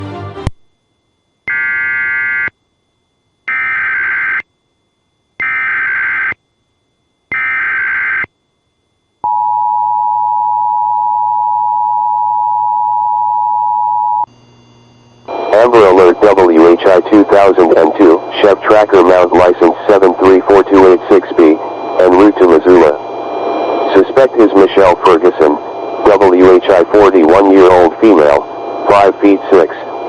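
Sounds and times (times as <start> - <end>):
screeching digital data bursts: 1.5 - 2.5, 3.5 - 4.4, 5.4 - 6.4, 7.3 - 8.3.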